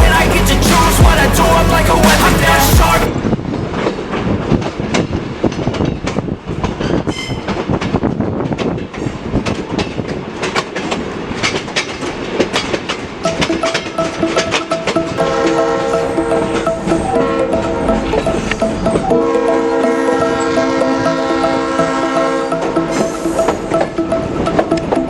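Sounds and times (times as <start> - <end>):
train rumble and rattle: 2.8 - 13.3
train wheels clacking over rail joints: 3.4 - 13.2.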